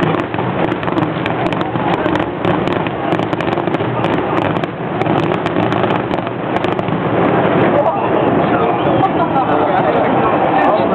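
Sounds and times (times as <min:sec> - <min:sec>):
fireworks popping and crackling: 0:00.0 - 0:10.2
people talking: 0:01.2 - 0:10.9.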